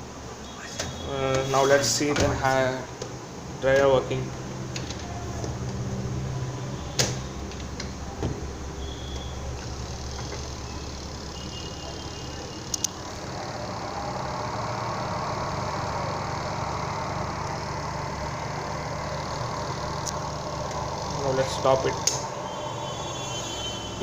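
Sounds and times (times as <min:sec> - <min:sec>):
washing machine spin dryer humming: 0:00.0 - 0:24.0
sharp clicks: 0:12.7 - 0:13.0.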